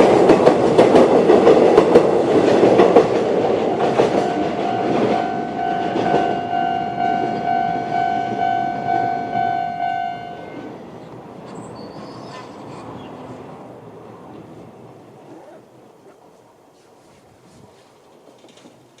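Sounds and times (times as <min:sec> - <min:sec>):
electric train rumbling: 0:00.0 - 0:19.0
level crossing warning bell: 0:03.6 - 0:10.8.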